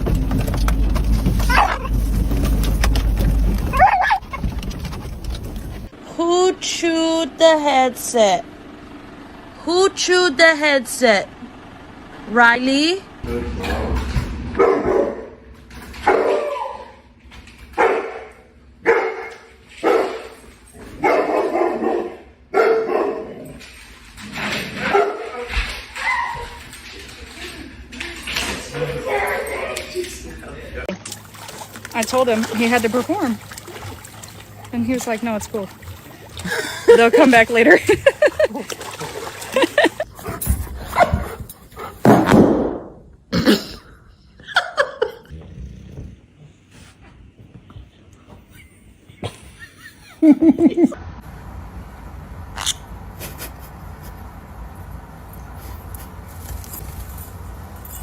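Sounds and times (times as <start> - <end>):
dog barking: 14.6 - 15.4, 16.0 - 17.0, 17.8 - 20.3, 21.0 - 23.6, 24.8 - 26.3.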